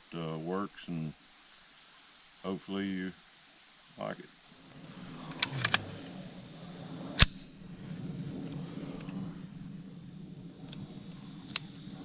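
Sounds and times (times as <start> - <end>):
insects buzzing: 0.0 - 12.0
rifle shot: 5.0 - 6.1, 7.2 - 7.7
light clicks: 5.1 - 6.1, 10.7 - 11.8.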